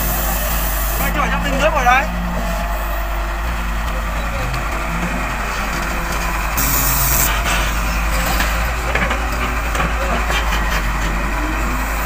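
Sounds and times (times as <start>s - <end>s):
loud hiss: 0.0s - 1.8s, 2.5s - 3.4s, 6.4s - 8.4s
diesel machinery droning: 0.0s - 12.0s.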